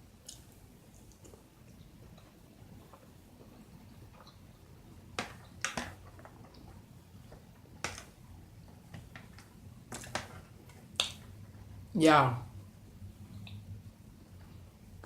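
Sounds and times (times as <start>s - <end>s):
eating clicks and smacks: 0.2s - 2.3s, 10.9s - 11.3s.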